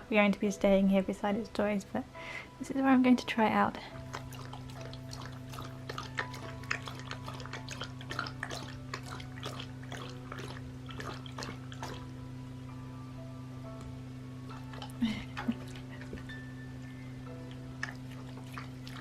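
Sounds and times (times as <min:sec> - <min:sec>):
small pump humming: 0:03.6 - 0:19.0
water trickling and dripping: 0:03.9 - 0:12.2, 0:17.5 - 0:19.0.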